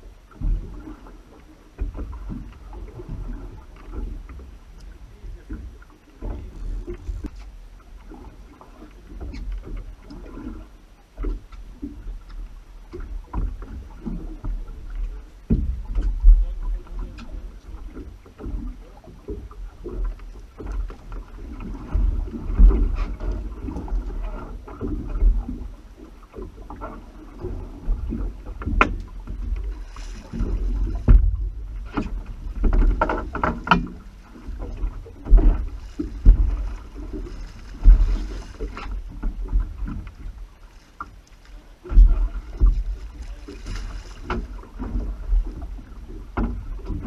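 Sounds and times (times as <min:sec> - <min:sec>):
thumps and splashes: 0:00.0 - 0:01.2, 0:01.8 - 0:04.5, 0:05.2 - 0:10.6, 0:11.2 - 0:47.0
sea water sloshing around boat: 0:00.0 - 0:47.0
low rumble: 0:02.1 - 0:09.1, 0:19.5 - 0:47.0.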